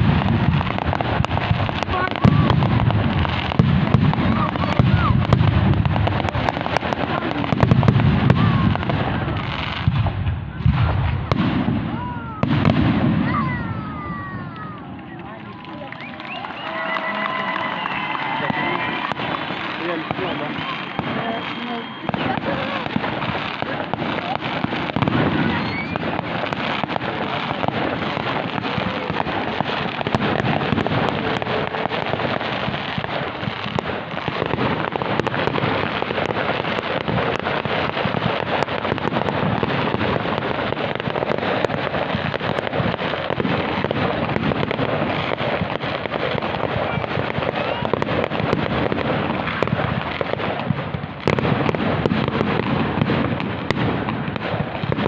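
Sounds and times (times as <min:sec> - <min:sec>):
fireworks bangs and crackling: 0:00.0 - 0:55.0.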